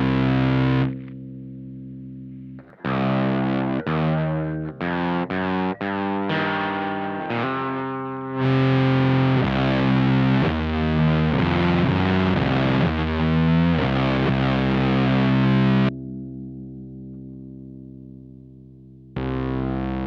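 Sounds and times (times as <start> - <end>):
amp hum: 0.0 - 15.9
fuzzed electric guitar riff: 0.0 - 15.9.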